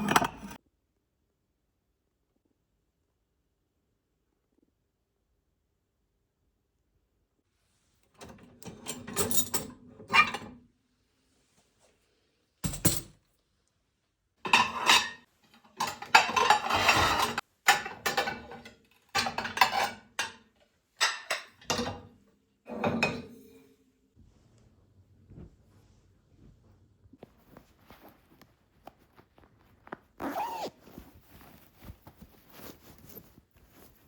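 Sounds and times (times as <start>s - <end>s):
dishes and cutlery clinking: 0.0s - 0.6s, 14.5s - 22.1s.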